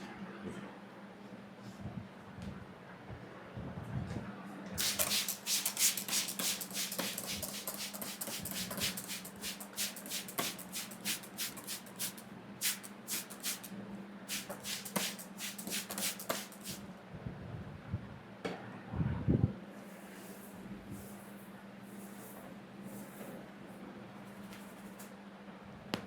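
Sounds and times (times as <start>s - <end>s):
hands rubbing through hair: 4.8s - 13.7s, 14.3s - 16.8s.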